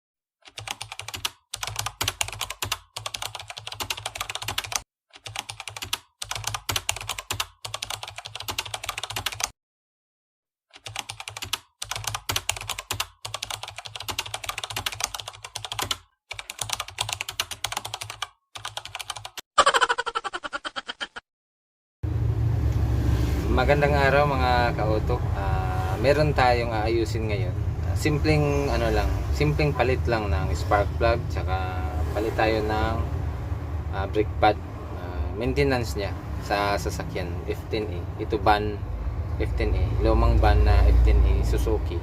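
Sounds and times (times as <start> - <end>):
keyboard typing clicks: 0.4 - 9.5, 10.7 - 19.4.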